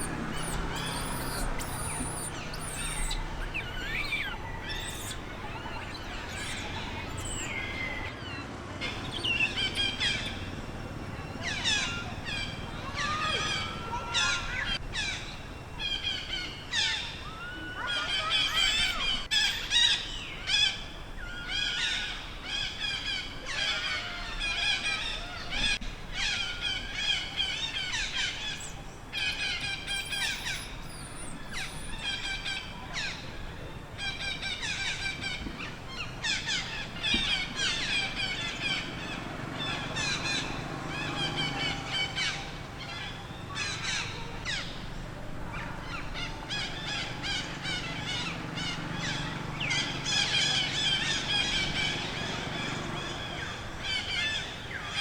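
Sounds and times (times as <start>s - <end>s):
baby monkey crying: 0.0s - 8.4s, 17.3s - 19.9s, 28.0s - 33.1s.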